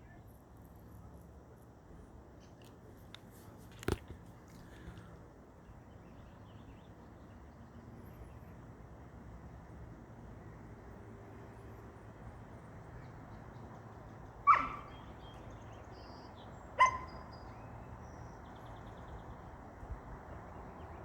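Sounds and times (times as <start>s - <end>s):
puppy barking: 14.4s - 15.0s, 16.8s - 17.2s.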